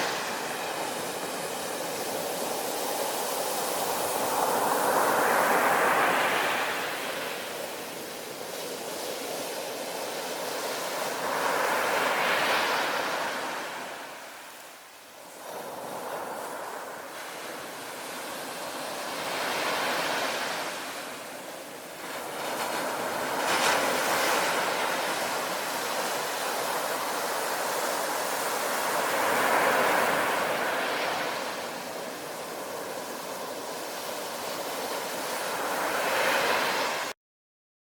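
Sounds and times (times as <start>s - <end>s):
ocean waves breaking: 0.0s - 7.4s, 15.6s - 37.1s.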